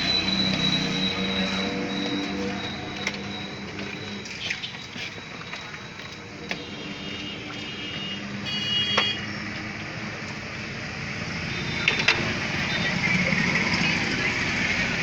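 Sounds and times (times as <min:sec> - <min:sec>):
high-pitched tone: 0:00.0 - 0:09.0
street traffic noise: 0:00.0 - 0:15.0.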